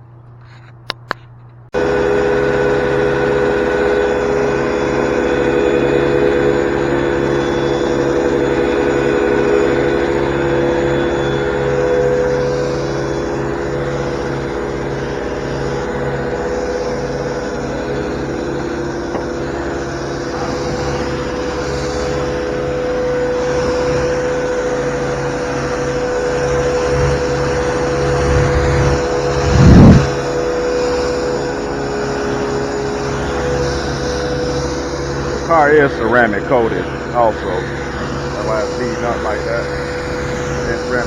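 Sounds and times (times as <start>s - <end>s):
pressure washer humming: 1.7s - 41.0s.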